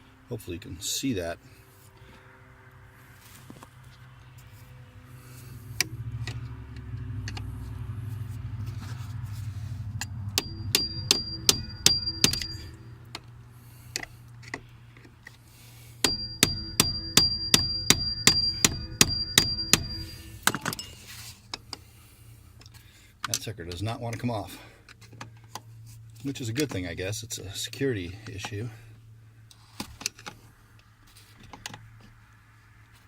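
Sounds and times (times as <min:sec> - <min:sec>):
hammer striking metal: 0:05.4 - 0:13.0, 0:16.0 - 0:20.8.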